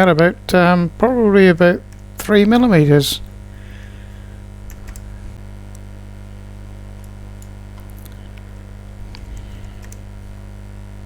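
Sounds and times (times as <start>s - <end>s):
electrical mains hum: 0.0s - 11.0s
faint computer clicks: 4.6s - 5.1s, 9.1s - 10.1s.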